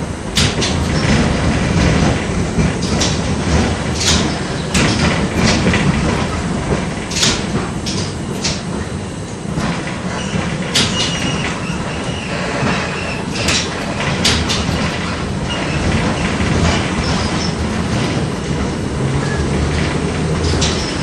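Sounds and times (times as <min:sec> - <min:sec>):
tram wheels rumbling: 0:00.0 - 0:21.0
high wheel squeal: 0:10.2 - 0:13.4, 0:19.1 - 0:19.6.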